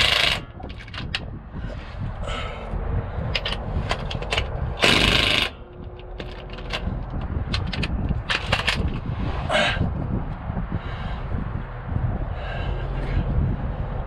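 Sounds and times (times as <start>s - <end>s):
tools clicking on metal bolts: 0.0s - 1.3s, 3.3s - 9.0s.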